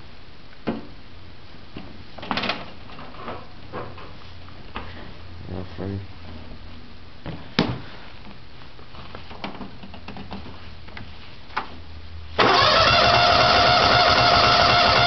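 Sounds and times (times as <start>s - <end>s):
small engine running: 12.4s - 15.0s.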